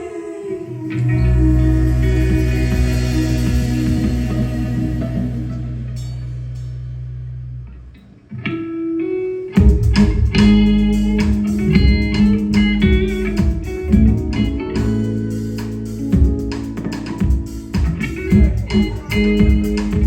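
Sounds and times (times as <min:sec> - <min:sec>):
electric guitar notes: 0:00.0 - 0:20.0
live rock band playing: 0:09.6 - 0:20.0.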